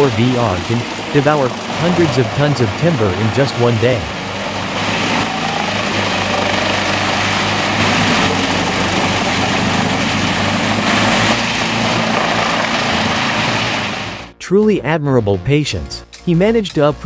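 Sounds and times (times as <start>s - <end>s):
deep engine hum: 0.0s - 14.4s
wood chipper chipping: 0.9s - 14.2s.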